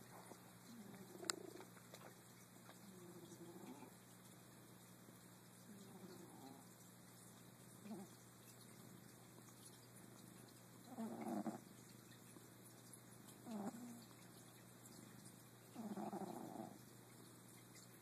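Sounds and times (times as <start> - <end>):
pet snoring: 2.8 - 3.9, 10.9 - 11.7, 13.4 - 14.1, 15.8 - 16.8.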